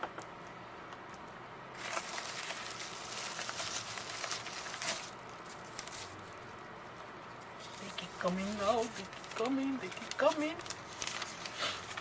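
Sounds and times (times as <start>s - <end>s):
packaging rustling and crinkling: 1.8s - 6.2s, 7.7s - 12.0s.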